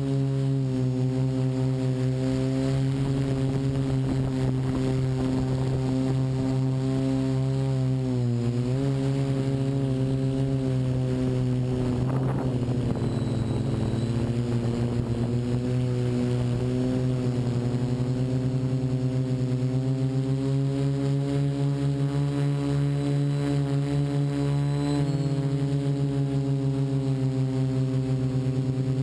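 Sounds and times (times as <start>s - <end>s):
drone propellers humming: 0.0s - 29.0s
rough wind noise: 11.1s - 18.6s.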